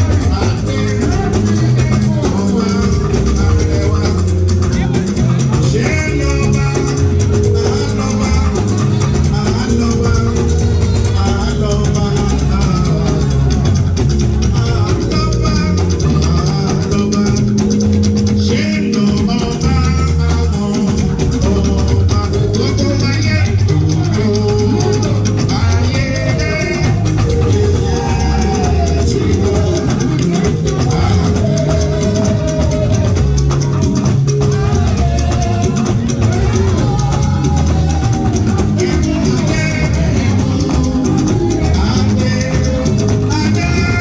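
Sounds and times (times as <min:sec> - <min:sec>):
person singing: 0:00.0 - 0:44.0
upbeat music with drum beat: 0:00.0 - 0:44.0.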